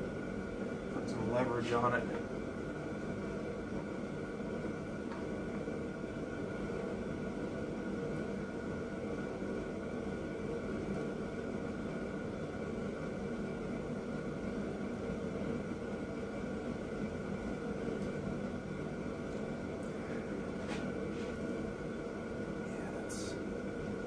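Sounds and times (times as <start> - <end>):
background hum and hiss: 0.0 - 24.0
faint constant tones: 0.0 - 24.0.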